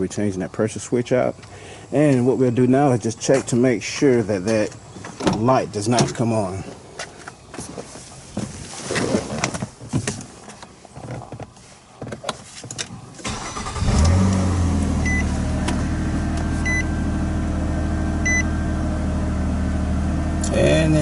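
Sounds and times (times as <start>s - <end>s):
car engine starting and idling: 13.2s - 21.0s
car warning chime beeping: 15.0s - 15.4s, 16.6s - 17.0s, 18.2s - 18.6s.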